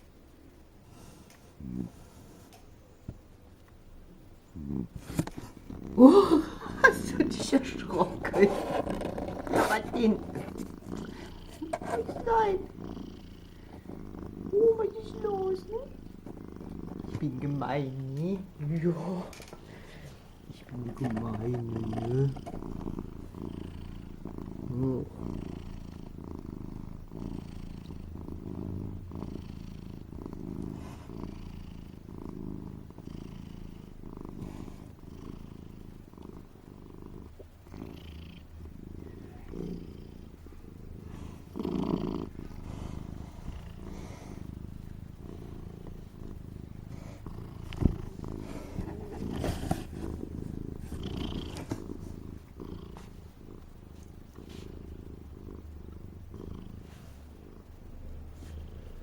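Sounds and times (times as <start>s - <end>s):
cat purring rumble: 0.0s - 3.2s, 4.1s - 59.0s.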